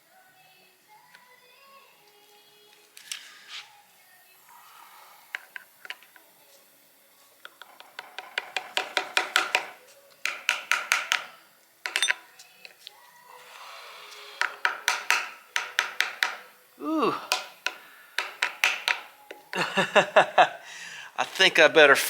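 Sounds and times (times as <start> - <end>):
hammer tapping metal: 7.7 - 12.2, 14.4 - 16.5, 17.3 - 19.2.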